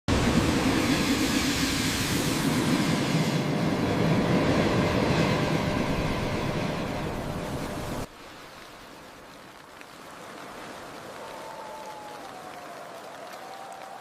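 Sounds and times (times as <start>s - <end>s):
train passing on tracks: 0.1s - 8.1s.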